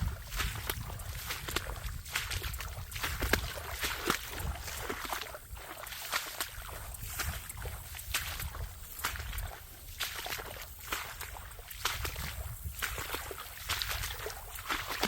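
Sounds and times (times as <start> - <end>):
low microphone rumble: 0.0 - 3.7
footsteps on a trail: 0.0 - 15.0.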